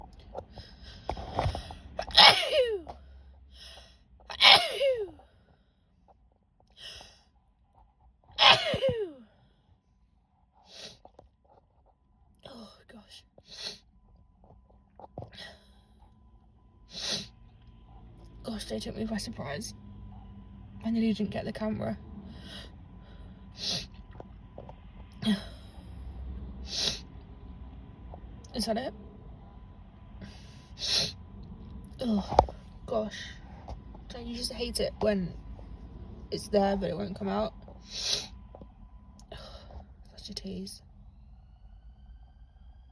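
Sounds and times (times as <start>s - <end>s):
woman sneezing: 2.0s - 2.9s, 4.3s - 5.2s, 8.4s - 9.2s.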